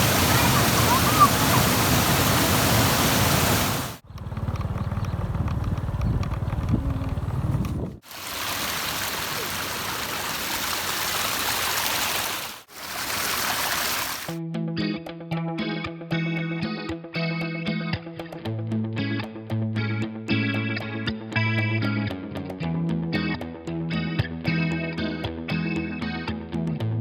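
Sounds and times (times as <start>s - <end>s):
waterfall and stream rushing: 0.0s - 4.0s, 8.0s - 14.4s.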